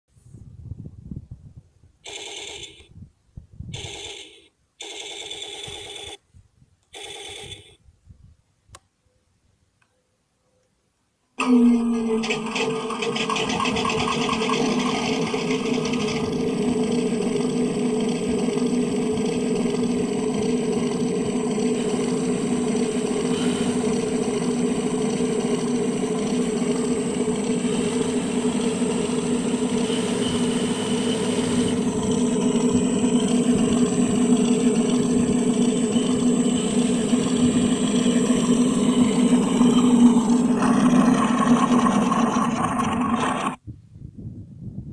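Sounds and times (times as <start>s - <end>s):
airplane engine drone: 11.4s - 43.6s.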